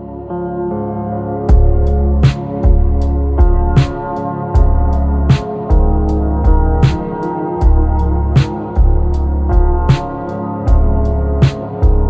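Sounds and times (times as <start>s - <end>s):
deep kick drum beat: 1.5s - 12.0s
snare hit: 5.3s - 5.7s, 6.8s - 7.2s, 11.4s - 11.8s.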